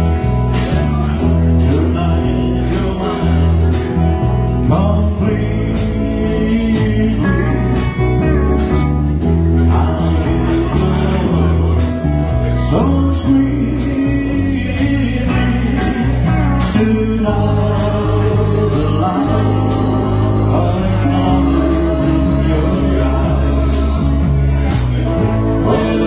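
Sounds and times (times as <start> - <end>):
band playing fifties-style music: 0.0 - 26.0.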